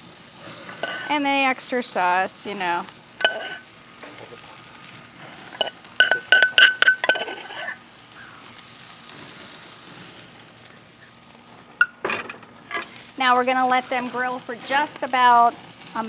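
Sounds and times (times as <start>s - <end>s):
food sizzling on grill: 0.0s - 16.0s
metal spoon clinking on dish: 0.8s - 1.1s, 3.2s - 3.6s, 5.5s - 7.8s, 11.8s - 12.9s.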